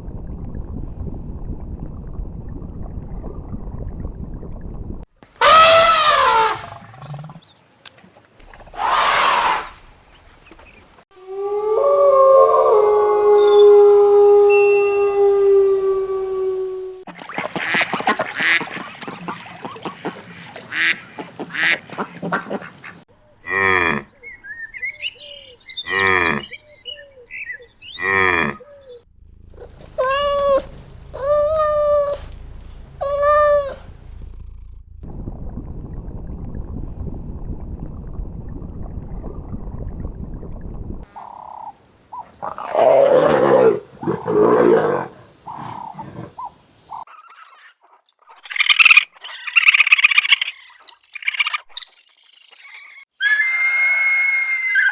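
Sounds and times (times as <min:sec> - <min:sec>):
loud sweeping animal calls: 0:05.4 - 0:07.3, 0:08.4 - 0:10.8, 0:29.5 - 0:34.1
short pitched animal calls: 0:27.9 - 0:34.7
low steady noise: 0:29.1 - 0:39.8.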